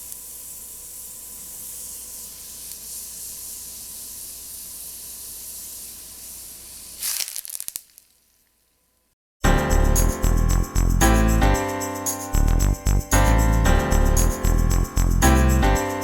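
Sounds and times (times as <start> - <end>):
food sizzling in hot oil: 0.0 - 8.1.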